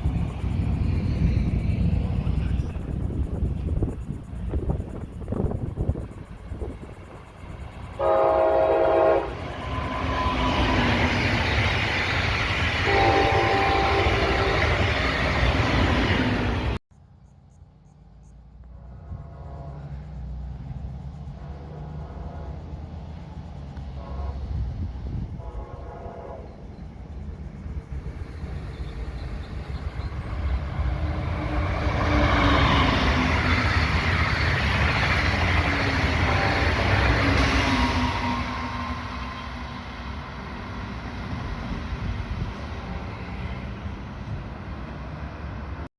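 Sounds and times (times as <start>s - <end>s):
train wheels rushing on rail: 0.0s - 16.8s, 18.6s - 45.9s
train horn blasts: 8.0s - 11.1s, 12.8s - 14.9s, 18.6s - 20.4s, 21.3s - 23.0s, 23.8s - 26.6s, 36.0s - 39.9s.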